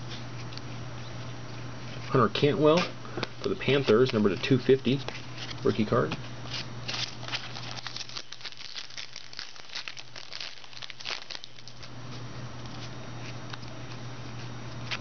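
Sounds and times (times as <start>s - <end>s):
low steady hum: 0.0s - 15.0s
card packaging crinkling: 6.5s - 12.0s.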